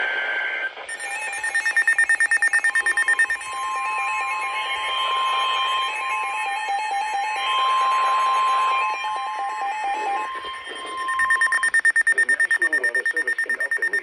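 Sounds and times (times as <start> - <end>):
rapid pulsing alert beep: 0.9 - 4.4, 9.7 - 14.0
electronic warning tones: 0.9 - 14.0.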